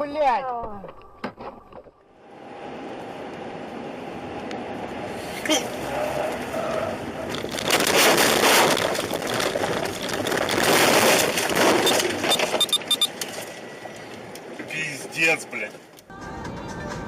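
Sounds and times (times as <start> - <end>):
vehicle rushing crunching noise: 1.3 - 13.9.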